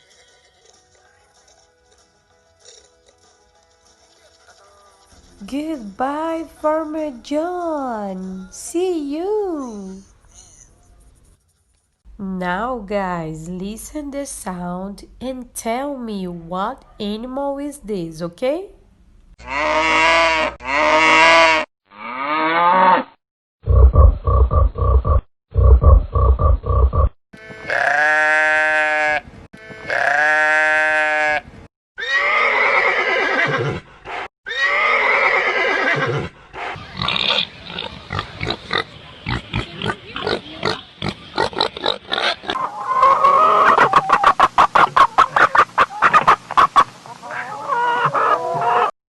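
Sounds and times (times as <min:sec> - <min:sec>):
farm animal calls: 0:34.5 - 0:48.9.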